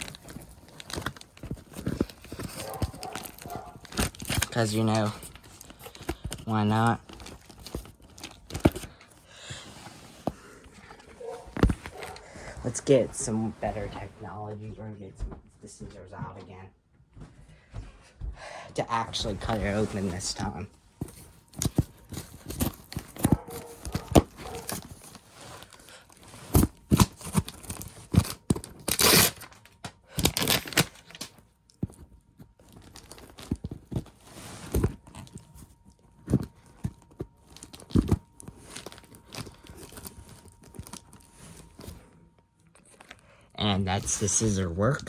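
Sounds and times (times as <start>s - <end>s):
packaging tearing and crinkling: 0.0s - 9.6s, 21.0s - 42.1s.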